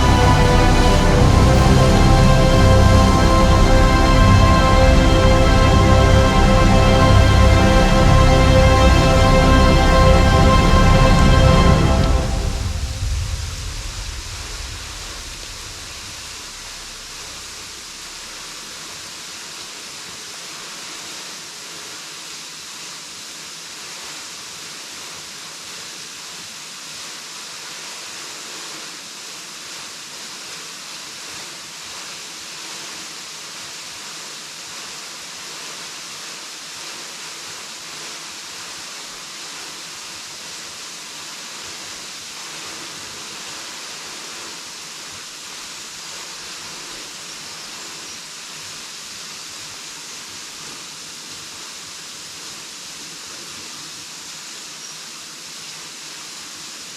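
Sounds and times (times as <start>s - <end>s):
waterfall pouring: 0.0s - 19.0s.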